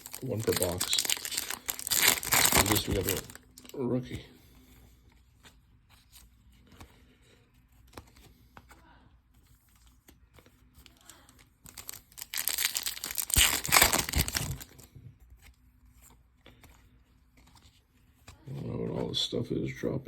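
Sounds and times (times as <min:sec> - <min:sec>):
foil wrapper tearing and crinkling: 0:00.0 - 0:03.8, 0:10.9 - 0:14.8
faint handling of cards: 0:00.0 - 0:20.0.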